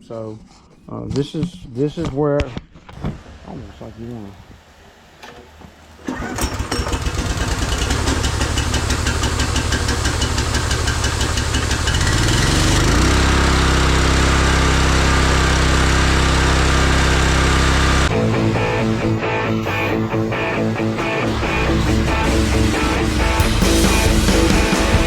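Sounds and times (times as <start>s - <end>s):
pressure washer engine running: 3.0s - 25.0s
guitar music: 16.5s - 25.0s.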